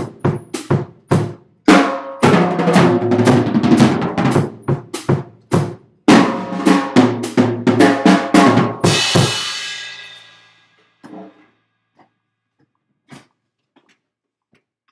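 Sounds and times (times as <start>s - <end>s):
drum strikes: 0.0s - 10.5s
cymbal crash: 8.9s - 10.7s.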